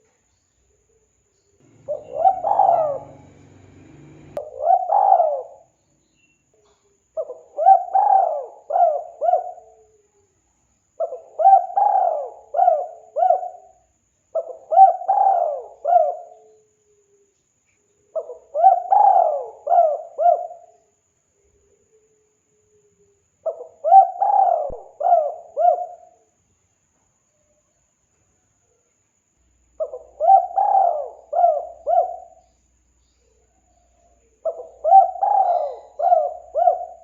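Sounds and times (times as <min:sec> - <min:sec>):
dove cooing: 0:01.6 - 0:05.7, 0:07.2 - 0:10.0, 0:11.0 - 0:13.7, 0:14.4 - 0:16.5, 0:18.2 - 0:20.7, 0:23.4 - 0:26.2, 0:29.8 - 0:32.4, 0:34.4 - 0:37.0.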